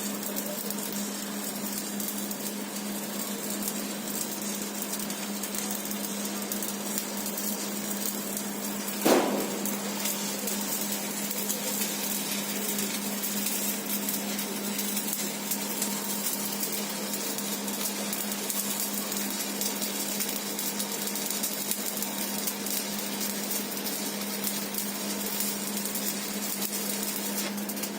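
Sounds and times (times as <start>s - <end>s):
welding arc crackling and hissing: 0.0s - 27.9s
sharp knock: 9.1s - 10.0s.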